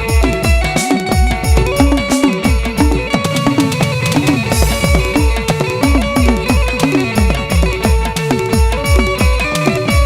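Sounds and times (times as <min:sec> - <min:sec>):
devotional folk music: 0:00.0 - 0:10.0
deep drum strokes: 0:01.6 - 0:08.0.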